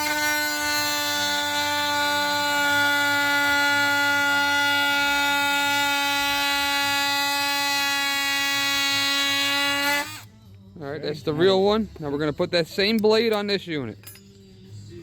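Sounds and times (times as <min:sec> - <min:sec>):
oscillating tool cutting wood: 0:00.0 - 0:10.3.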